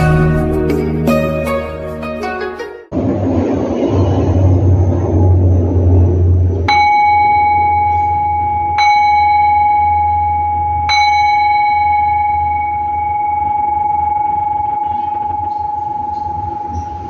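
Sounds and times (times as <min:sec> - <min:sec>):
low rumble of music: 0:02.9 - 0:17.0
bowl bell ringing: 0:06.7 - 0:17.0.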